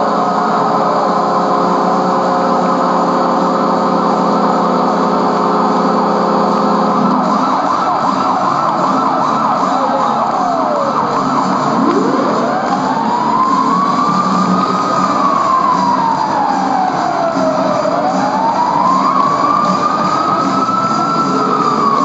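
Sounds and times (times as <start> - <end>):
siren-like wails: 0.0 - 22.0
crowd roaring and cheering: 6.8 - 22.0.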